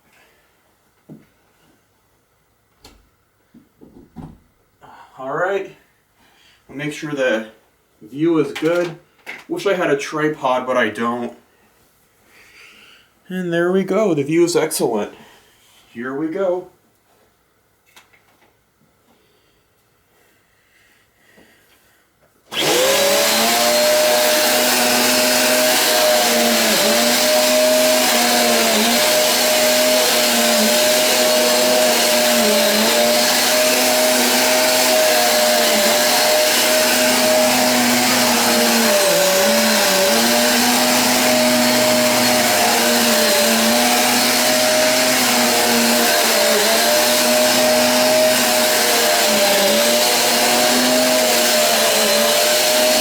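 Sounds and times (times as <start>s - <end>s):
vacuum cleaner whining: 22.5s - 53.0s.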